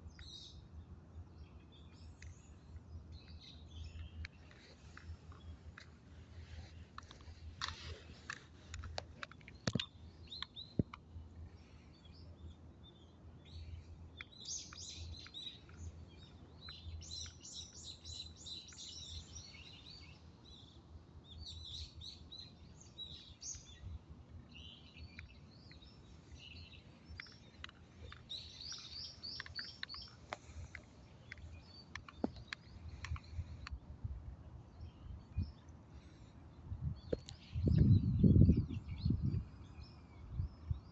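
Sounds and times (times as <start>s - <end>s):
small birds chirping: 0.0s - 40.9s
sharp clicks: 27.1s - 33.8s.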